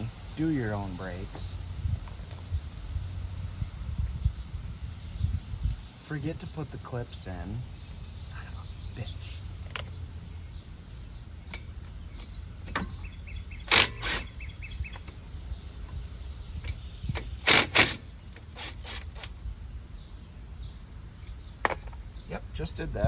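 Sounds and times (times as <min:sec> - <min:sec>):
steady low hum: 0:00.0 - 0:23.0
tools clacking and scraping: 0:13.7 - 0:14.3, 0:16.7 - 0:19.4.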